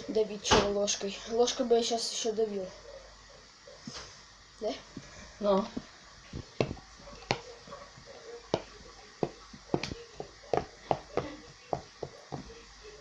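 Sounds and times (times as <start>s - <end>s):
bananas squishing in a bowl: 4.8s - 13.0s.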